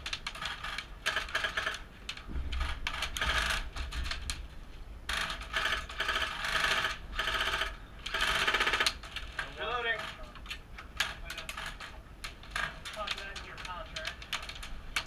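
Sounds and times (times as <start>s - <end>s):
airsoft guns firing: 5.3s - 9.1s.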